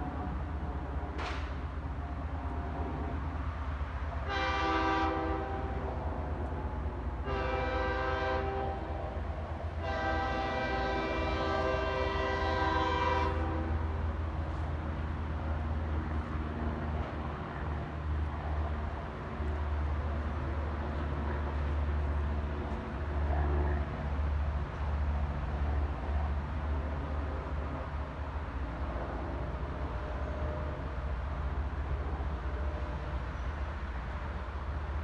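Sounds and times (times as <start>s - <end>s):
locomotive air horn blasts: 4.2s - 5.9s, 7.2s - 9.2s, 9.8s - 14.0s.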